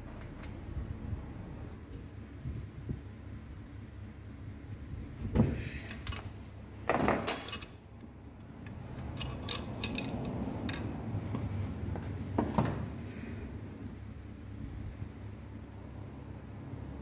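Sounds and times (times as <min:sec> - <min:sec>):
metal tools knocking and clattering: 0:06.9 - 0:07.8, 0:09.0 - 0:11.5.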